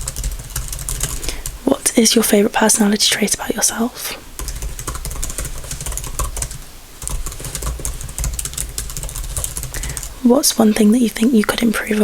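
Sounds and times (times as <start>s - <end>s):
computer keyboard typing: 0.0s - 1.6s, 4.4s - 10.2s.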